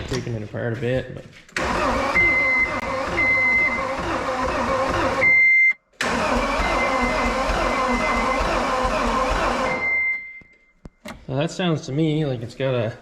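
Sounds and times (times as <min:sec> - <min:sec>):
diesel engine cranking: 0:01.6 - 0:05.4, 0:06.0 - 0:09.9
steady high beep: 0:09.8 - 0:10.7.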